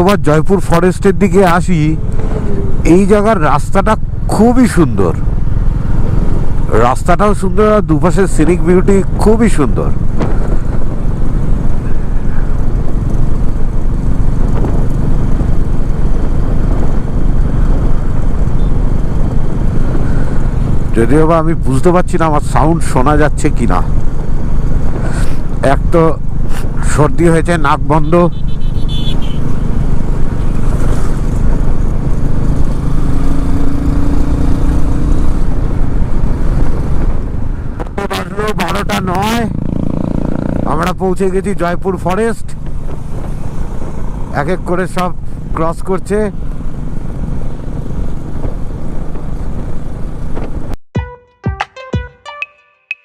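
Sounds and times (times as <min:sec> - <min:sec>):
motorcycle engine running: 0:00.6 - 0:21.7, 0:23.8 - 0:50.8
wind buffeting microphone: 0:10.0 - 0:20.9.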